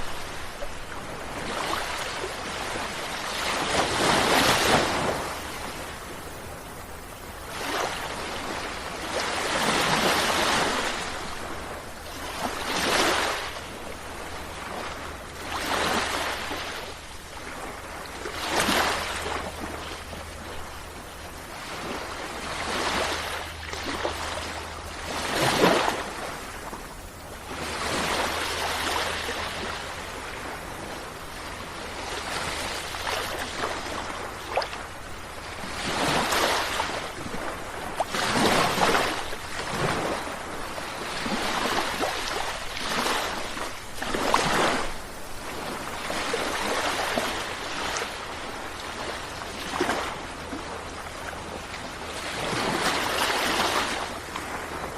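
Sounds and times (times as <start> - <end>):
sea waves breaking on shore: 0.0 - 54.9.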